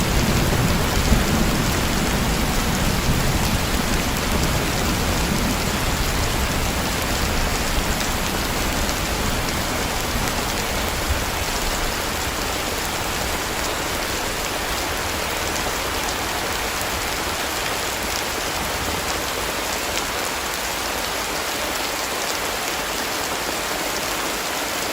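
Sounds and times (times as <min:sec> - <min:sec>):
thunder rumbling: 0:00.0 - 0:19.4
heavy rain falling: 0:00.0 - 0:24.9.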